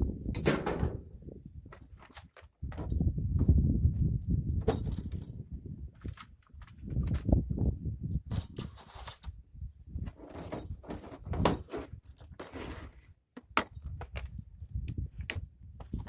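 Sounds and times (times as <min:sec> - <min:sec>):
metal tools clinking: 0:00.4 - 0:01.0.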